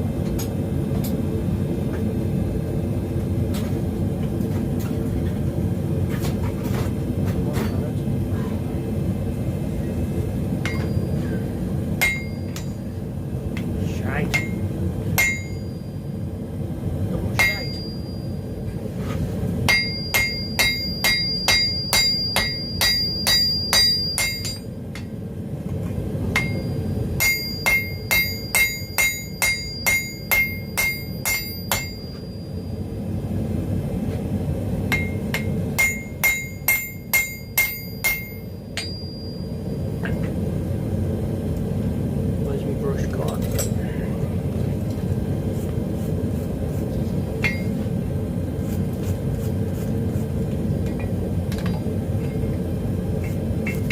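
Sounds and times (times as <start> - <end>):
gas forge burner rushing: 0.0 - 53.9
hammer striking steel on anvil: 10.6 - 11.3, 12.0 - 12.9, 13.6 - 16.1, 17.3 - 18.5, 19.7 - 25.1, 26.3 - 32.5, 34.9 - 40.3, 47.4 - 47.8, 53.2 - 53.9.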